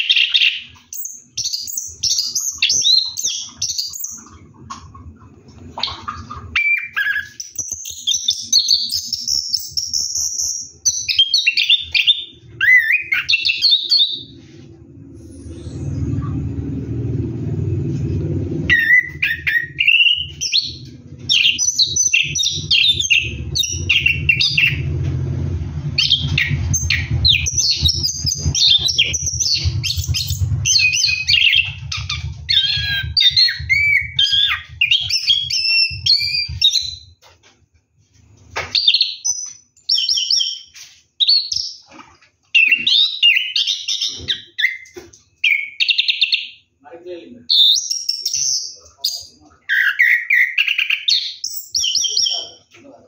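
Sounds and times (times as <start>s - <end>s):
low steady hum: 14.2s - 19.2s.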